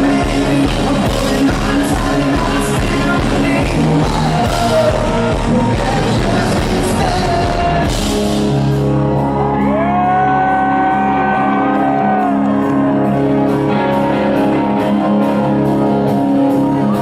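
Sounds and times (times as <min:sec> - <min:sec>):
person singing: 0:00.0 - 0:08.4
drums: 0:00.0 - 0:17.0
rock band playing live: 0:00.0 - 0:17.0.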